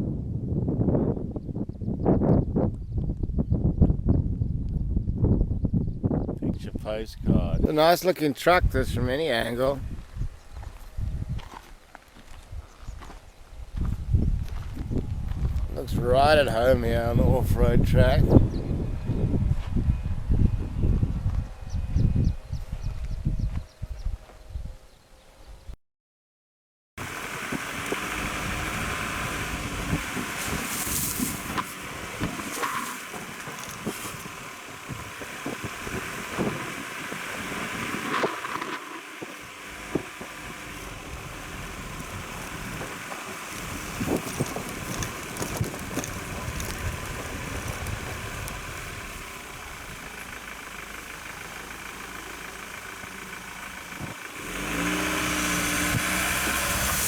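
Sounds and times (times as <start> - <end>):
stones crackling under tyres: 10.5 - 15.9, 27.0 - 57.0
tyre rumble on gravel: 27.2 - 50.5.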